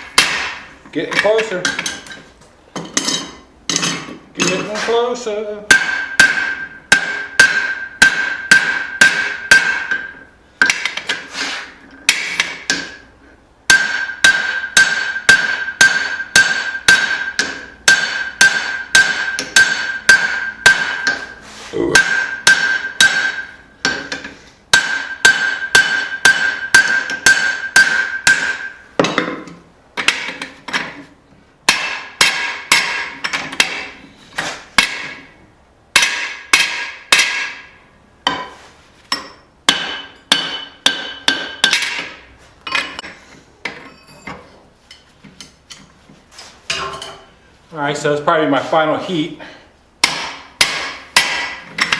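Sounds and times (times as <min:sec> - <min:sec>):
hammer striking steel on anvil: 0:00.0 - 0:02.2, 0:05.7 - 0:11.2, 0:12.1 - 0:13.0, 0:13.7 - 0:31.0, 0:31.7 - 0:34.0, 0:34.8 - 0:45.9, 0:50.0 - 0:51.9
anvil ringing: 0:05.7 - 0:10.8, 0:13.7 - 0:21.3, 0:21.9 - 0:29.3.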